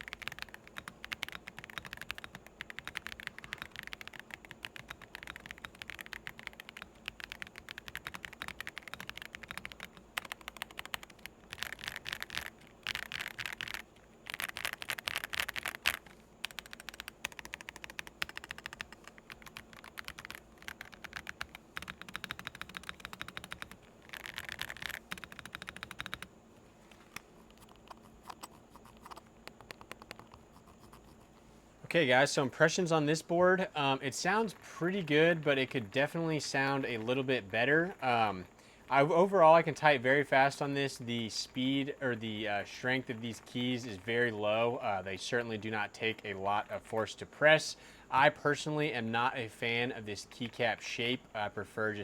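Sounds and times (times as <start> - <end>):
mechanical keyboard typing: 0.0 - 26.3, 27.1 - 31.2.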